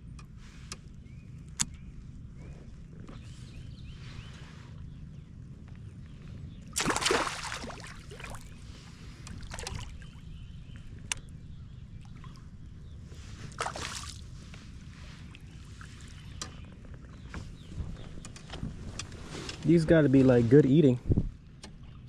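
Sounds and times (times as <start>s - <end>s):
water splashing against kayak: 6.8s - 10.2s.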